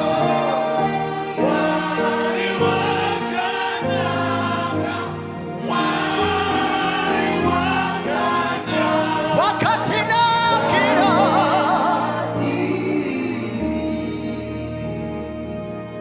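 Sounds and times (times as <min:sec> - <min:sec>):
gospel worship music: 0:00.0 - 0:16.0.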